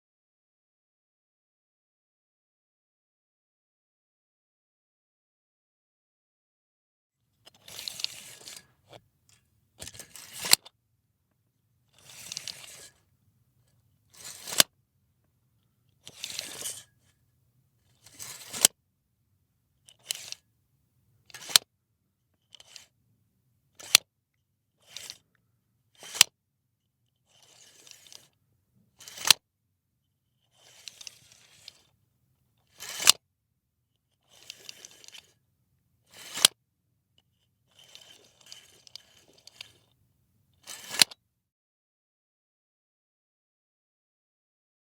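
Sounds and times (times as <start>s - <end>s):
tape measure rattle and snap: 9.8s - 10.7s, 12.0s - 13.0s, 14.2s - 14.7s, 16.1s - 16.9s, 18.0s - 18.7s, 21.3s - 21.6s, 23.8s - 24.0s, 26.0s - 26.3s, 29.0s - 29.4s, 32.7s - 33.2s, 36.2s - 36.6s, 40.6s - 41.2s.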